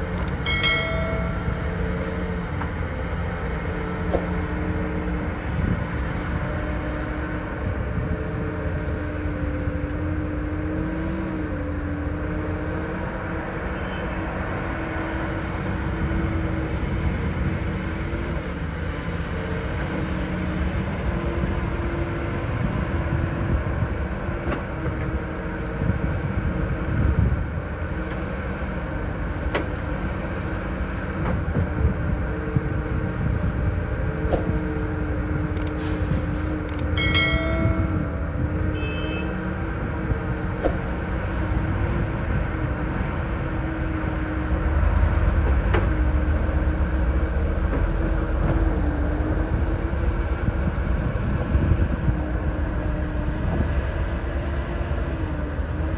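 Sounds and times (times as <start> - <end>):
diesel machinery engine hum: 0.0 - 55.9
high-pitched tone: 0.2 - 2.2, 36.7 - 38.6.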